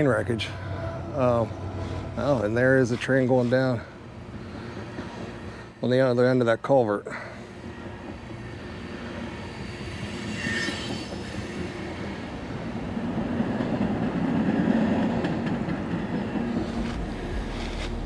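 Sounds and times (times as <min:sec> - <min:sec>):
train wheels rumbling: 0:00.0 - 0:18.0
wheel squeal: 0:07.8 - 0:12.4.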